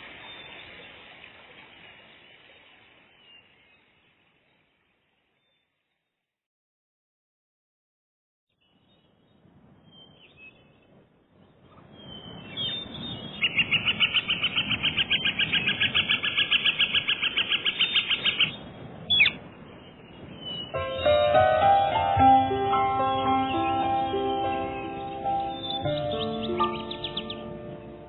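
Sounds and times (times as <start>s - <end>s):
bird singing a fast trill: 11.9s - 21.7s, 22.4s - 28.0s
plucked-string music: 20.8s - 28.0s.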